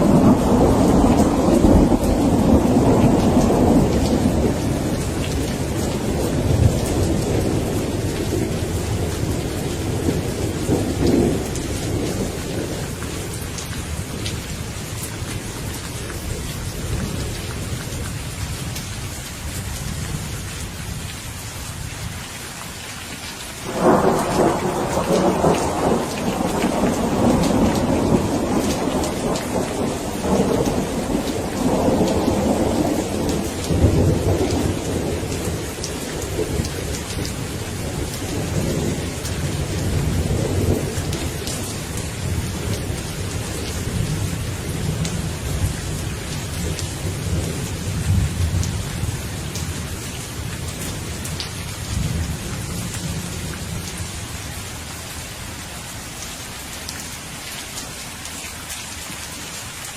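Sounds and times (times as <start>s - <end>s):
loud thunderclap: 0.0s - 12.9s, 23.6s - 37.2s
thunder rumbling: 0.0s - 18.2s, 23.6s - 54.2s
steady rain: 0.0s - 59.9s.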